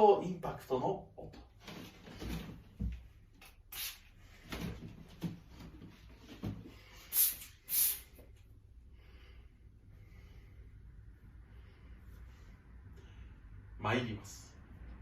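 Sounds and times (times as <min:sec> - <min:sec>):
short rustles and knocks: 0:01.5 - 0:03.2, 0:04.4 - 0:06.8.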